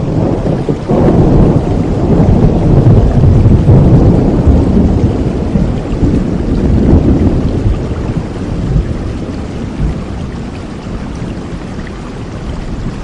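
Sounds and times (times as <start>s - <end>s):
rumble of thunder: 0.0s - 13.0s
steady rain: 0.0s - 13.0s.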